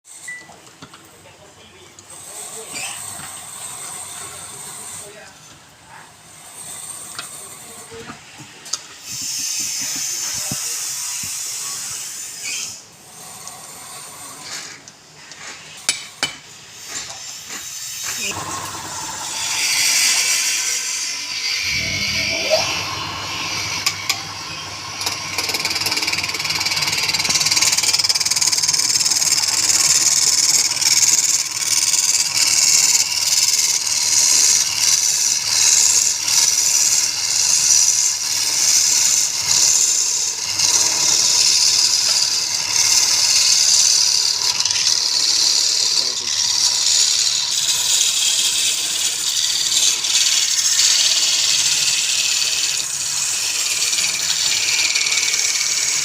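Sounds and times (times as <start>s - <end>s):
turning tool cutting wood: 2.0s - 5.3s, 6.2s - 56.0s
lathe motor hum: 18.1s - 56.0s.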